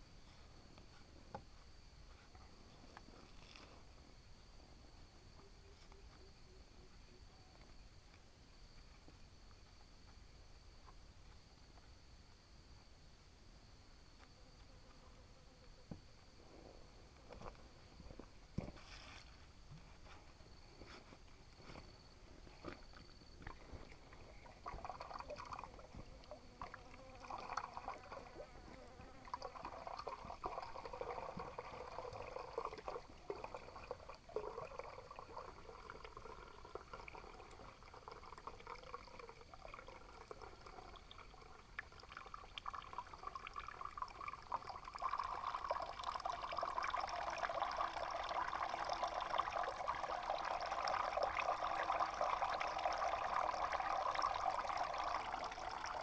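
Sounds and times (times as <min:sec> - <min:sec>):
water trickling and pouring: 0:22.9 - 0:56.0.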